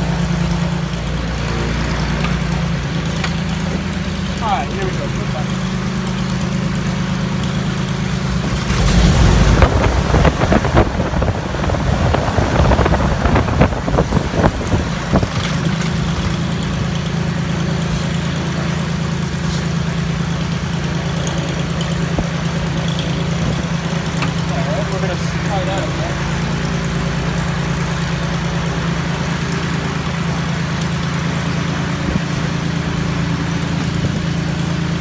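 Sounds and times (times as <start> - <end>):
piston engine drone: 0.0 - 35.0
loud rushing and crackling: 7.2 - 20.8.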